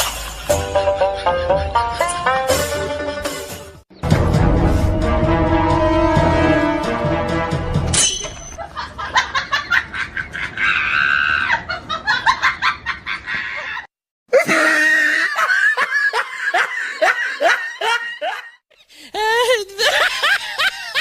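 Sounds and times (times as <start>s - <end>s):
rapid rhythmic laughter: 0.0s - 3.7s.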